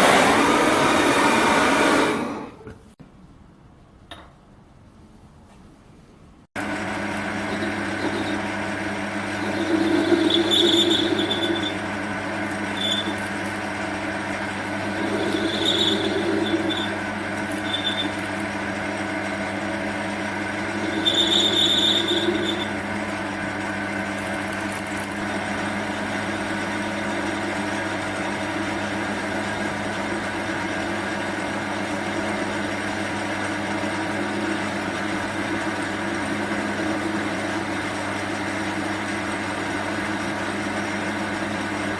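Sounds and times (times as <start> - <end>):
small lathe running: 6.6 - 41.9
cutting tool squealing: 7.2 - 30.0.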